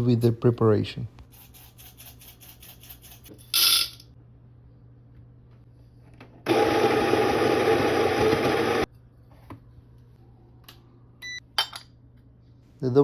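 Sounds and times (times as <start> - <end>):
electric coffee grinder running: 6.5 - 8.9.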